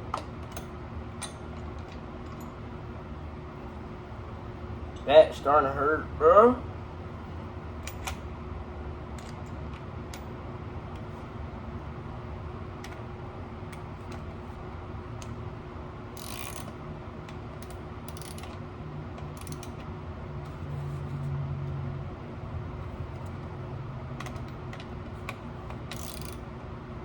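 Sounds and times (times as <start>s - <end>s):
steady background hum: 0.0s - 27.0s
ratchet wrench turning: 16.2s - 16.8s, 17.6s - 18.6s, 19.3s - 19.8s, 25.3s - 26.4s.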